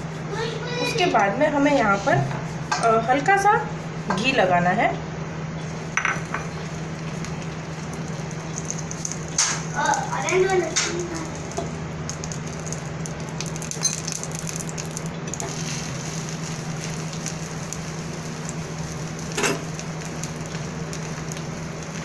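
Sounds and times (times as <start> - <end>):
bread sizzling in a pan: 5.8 - 22.0.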